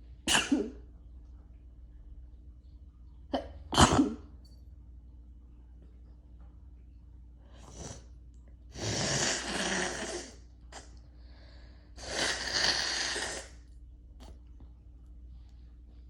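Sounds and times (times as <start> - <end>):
person sneezing: 0.3 - 0.8.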